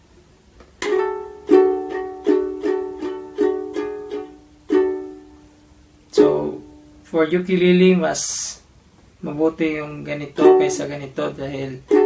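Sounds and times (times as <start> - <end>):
ukulele strumming: 0.8 - 7.1, 10.3 - 12.0.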